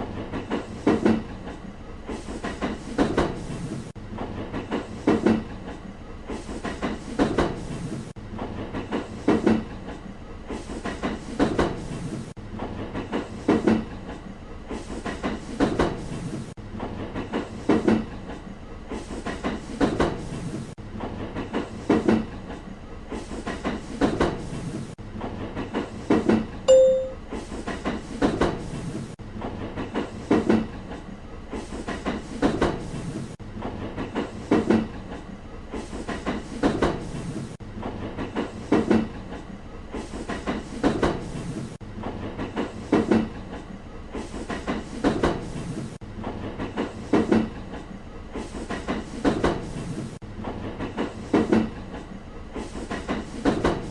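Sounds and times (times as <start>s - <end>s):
train clickety-clack over rail joints: 0.0s - 53.9s
train rumble: 0.0s - 53.9s
short beep: 26.7s - 27.3s.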